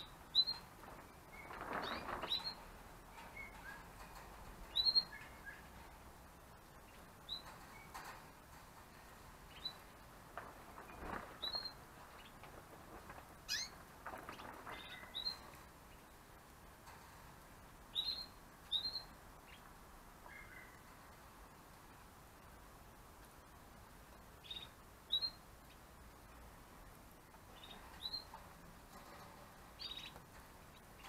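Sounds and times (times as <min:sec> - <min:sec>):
canaries chirping: 0:00.0 - 0:05.9, 0:06.7 - 0:10.0, 0:10.8 - 0:12.4, 0:13.5 - 0:16.2, 0:17.9 - 0:21.0, 0:24.4 - 0:25.9, 0:27.5 - 0:31.0
soft rustles and clicks: 0:00.0 - 0:24.6, 0:25.2 - 0:31.0.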